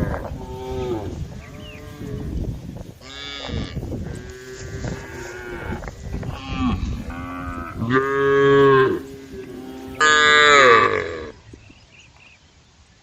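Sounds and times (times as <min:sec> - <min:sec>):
cattle mooing: 0:03.0 - 0:11.4.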